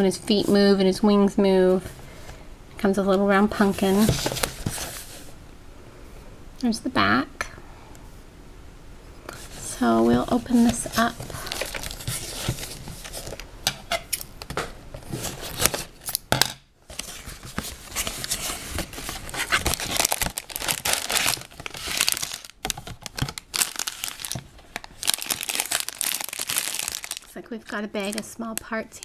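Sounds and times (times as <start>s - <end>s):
plastic bags crinkling: 9.4s - 13.5s, 15.0s - 29.0s
cardboard box tearing: 17.0s - 22.5s.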